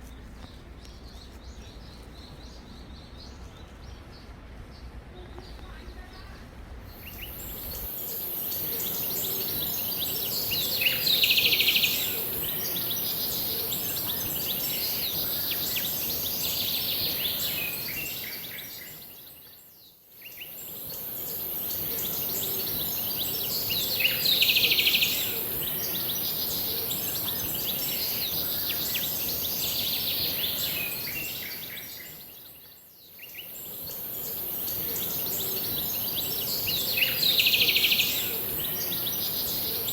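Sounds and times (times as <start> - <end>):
steady high-pitched hiss: 0.0 - 39.9
birds chirping and calling: 33.4 - 39.9.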